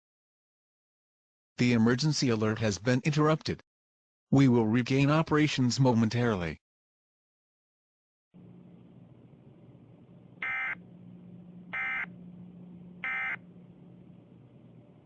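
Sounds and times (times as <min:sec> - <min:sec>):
low hum with hiss: 0:08.4 - 0:15.0.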